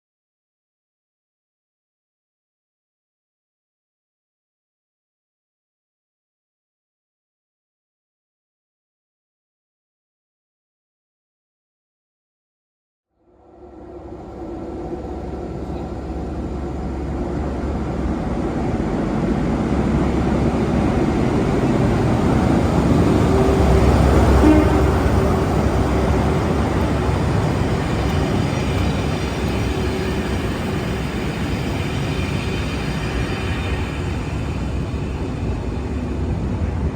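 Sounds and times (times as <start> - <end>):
train rumbling past: 13.3 - 36.9.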